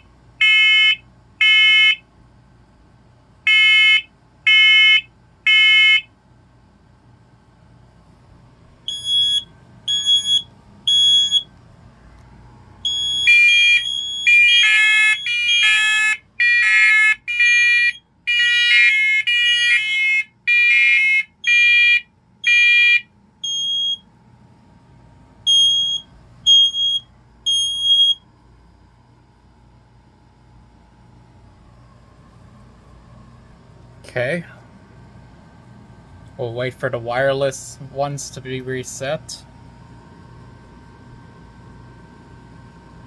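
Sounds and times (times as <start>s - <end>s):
smoke alarms beeping: 0.4s - 2.0s, 3.5s - 6.0s, 8.9s - 11.5s, 12.8s - 24.0s, 25.5s - 28.2s.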